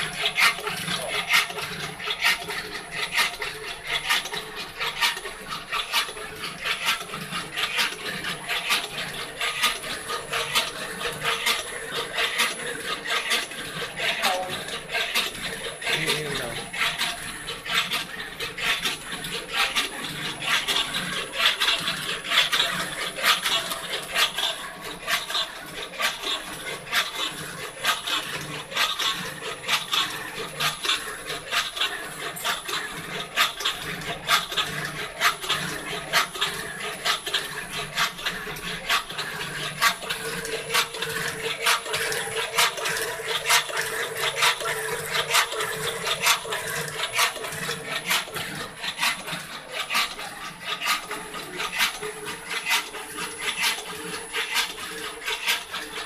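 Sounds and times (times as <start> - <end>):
machine clicks and scraping: 0.0 - 56.0.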